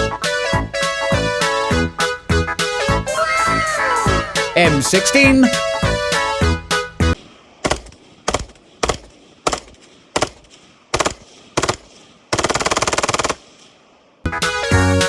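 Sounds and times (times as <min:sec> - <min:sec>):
automatic gunfire burst: 0:07.6 - 0:13.7
rifle single shots: 0:07.6 - 0:14.0.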